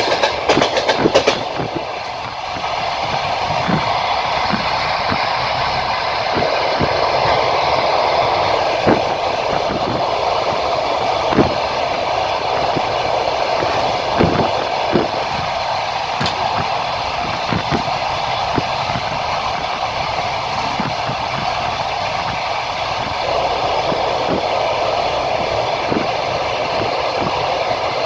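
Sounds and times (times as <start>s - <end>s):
train wheels rumbling on rails: 0.0s - 28.0s
wheels knocking over rail joints: 0.0s - 28.0s.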